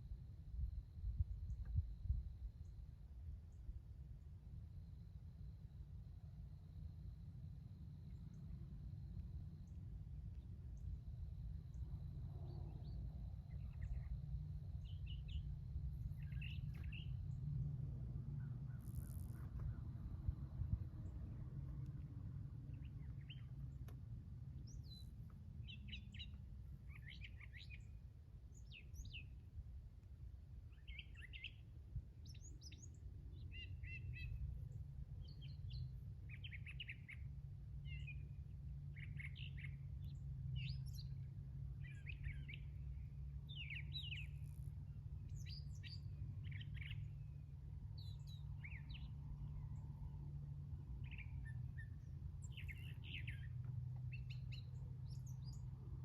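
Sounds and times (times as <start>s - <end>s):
steady low hum: 0.0s - 56.0s
small birds chirping: 12.7s - 17.4s, 18.4s - 20.0s, 22.7s - 24.0s, 24.6s - 27.9s, 30.7s - 31.6s, 32.2s - 47.4s, 48.0s - 49.9s, 51.0s - 55.8s.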